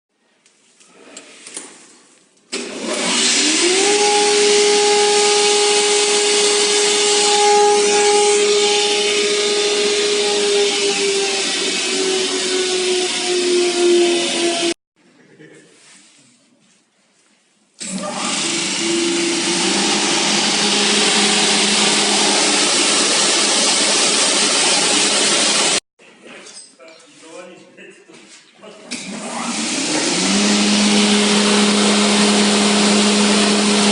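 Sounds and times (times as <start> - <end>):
machine spindles whining: 2.8 - 14.8, 17.8 - 25.8.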